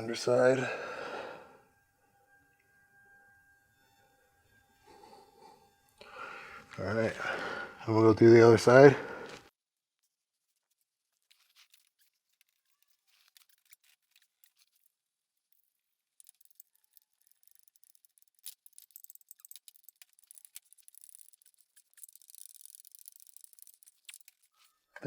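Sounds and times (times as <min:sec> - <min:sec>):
faint clicks and rustles: 0:09.2 - 0:25.0.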